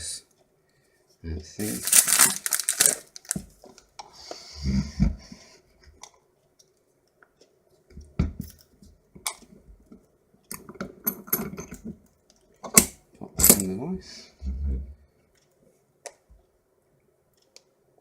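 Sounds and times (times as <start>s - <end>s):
packaging rustle: 1.6s - 3.5s.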